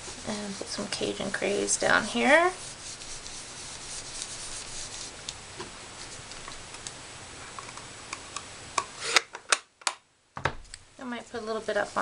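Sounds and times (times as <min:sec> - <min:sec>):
sponge rubbing on cardstock: 0:00.0 - 0:05.2, 0:11.7 - 0:12.0.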